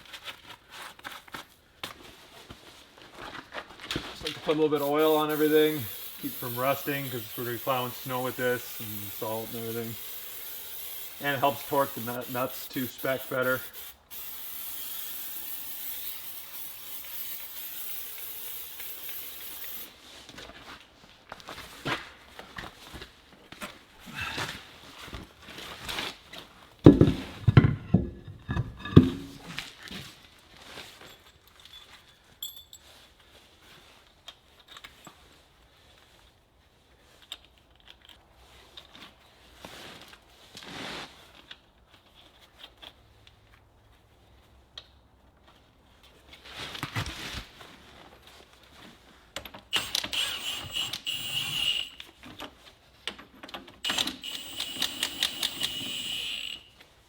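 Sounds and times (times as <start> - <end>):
socket ratchet clicking: 4.8 - 19.9, 49.7 - 52.1, 53.8 - 56.7
metal clinks and knocks: 26.9 - 29.5, 31.0 - 32.9.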